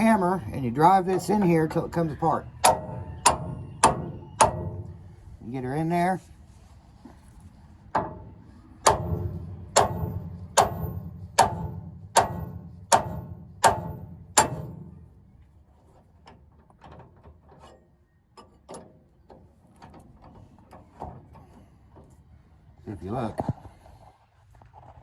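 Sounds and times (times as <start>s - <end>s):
hammer striking metal fork: 8.8s - 14.9s.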